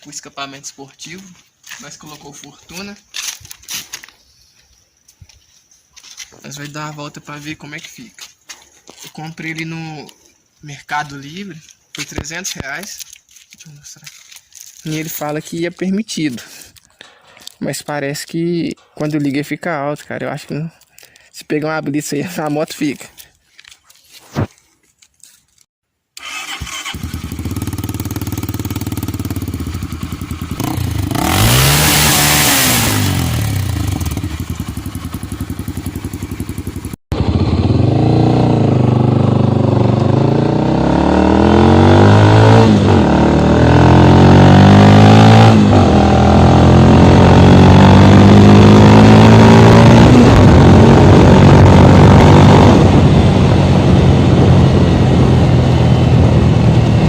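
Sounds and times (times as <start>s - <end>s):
motorcycle accelerating and shifting: 26.2s - 57.0s
motorcycle engine idling and revving: 26.2s - 57.0s.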